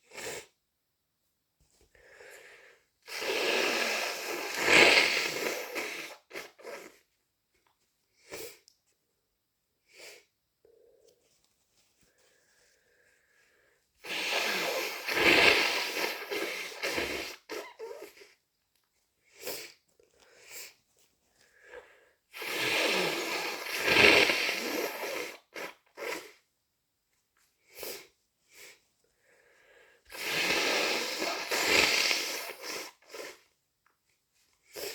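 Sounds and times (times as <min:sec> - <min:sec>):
person blowing nose: 0:00.0 - 0:00.6, 0:02.0 - 0:07.1, 0:08.2 - 0:08.6, 0:09.9 - 0:10.3, 0:14.0 - 0:18.4, 0:19.2 - 0:20.8, 0:21.6 - 0:26.5, 0:27.6 - 0:28.9, 0:30.1 - 0:33.6, 0:34.6 - 0:34.9
person sniffling: 0:13.2 - 0:18.4.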